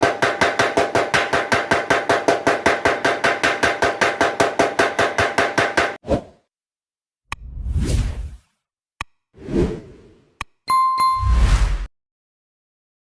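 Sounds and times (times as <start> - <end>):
power hammer pounding: 0.0 - 6.0.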